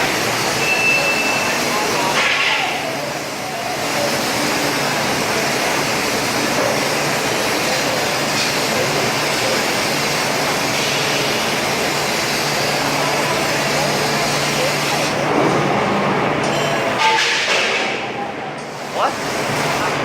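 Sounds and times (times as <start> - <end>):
laser cutter rushing hiss: 0.0 - 15.2.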